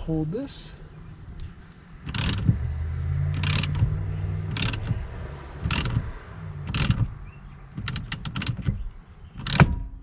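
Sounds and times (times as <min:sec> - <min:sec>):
socket ratchet clicking: 0:02.0 - 0:02.6, 0:03.4 - 0:09.8.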